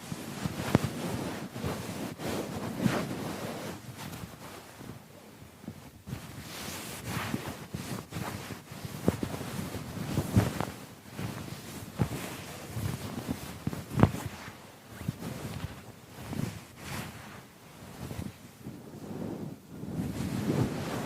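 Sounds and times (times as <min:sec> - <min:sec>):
rubbing and swishing on keyboard: 0:00.0 - 0:05.0, 0:05.6 - 0:21.0.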